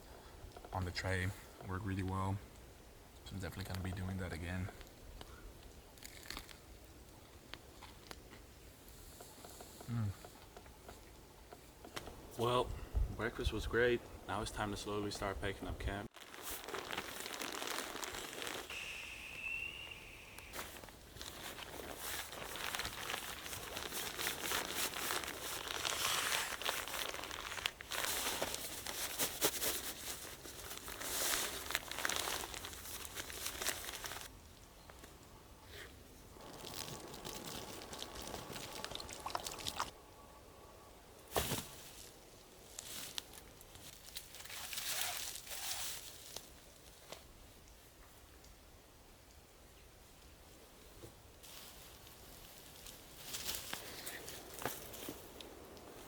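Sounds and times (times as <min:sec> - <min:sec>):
camping gear rustling and crinkling: 0:16.1 - 0:40.0, 0:41.2 - 0:47.5, 0:50.8 - 0:56.0.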